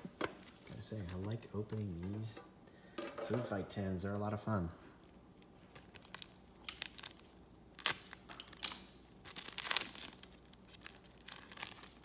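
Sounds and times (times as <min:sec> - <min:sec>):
wrapper crinkling and tearing: 0:05.0 - 0:12.0.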